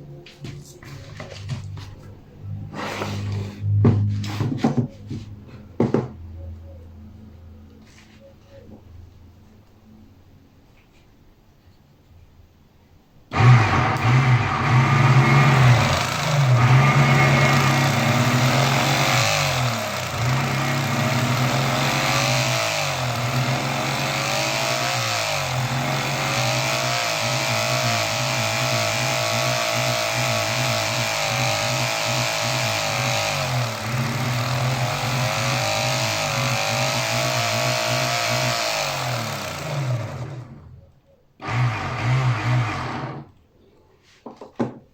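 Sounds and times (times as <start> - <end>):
generator electrical hum: 13.3 - 43.4.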